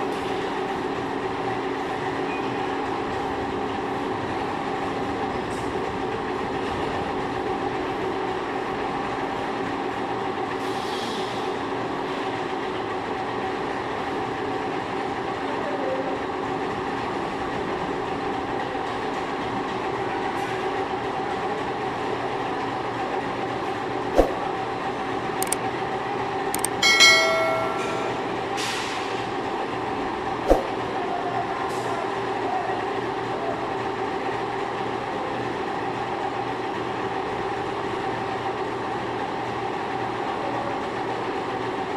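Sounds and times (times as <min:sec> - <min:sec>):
sharp metallic clicks: 0:26.6 - 0:26.8
ringing metal clang: 0:26.8 - 0:28.3.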